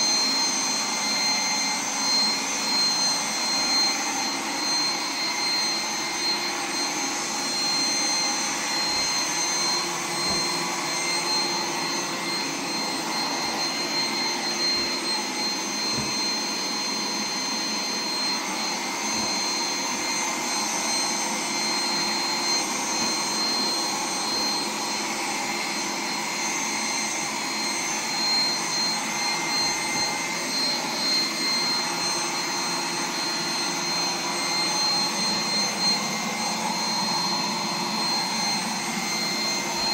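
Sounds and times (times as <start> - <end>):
robot vacuum whirring: 0.0 - 39.9.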